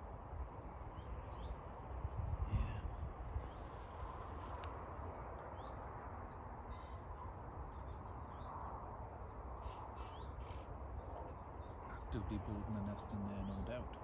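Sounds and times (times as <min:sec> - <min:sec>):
songbirds chirping: 0:00.0 - 0:14.0.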